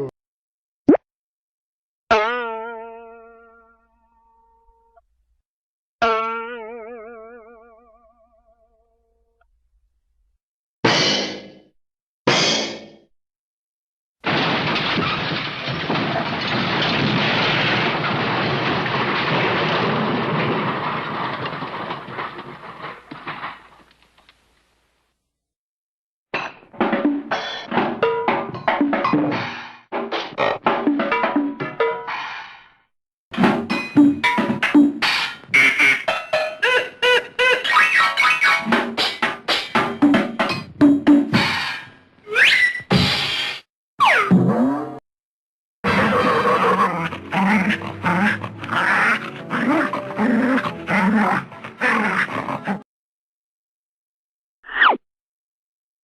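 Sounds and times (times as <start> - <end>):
cartoon drum hits: 10.8 - 11.6, 12.3 - 12.9, 26.8 - 32.0
rumbling crash: 14.2 - 24.2
scattered clatters: 14.2 - 24.5.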